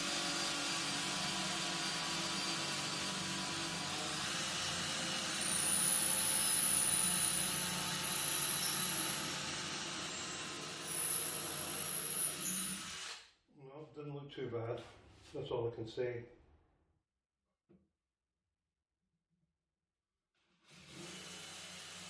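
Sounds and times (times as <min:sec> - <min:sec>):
electric drill boring through wood: 0:00.0 - 0:13.2, 0:20.7 - 0:22.0.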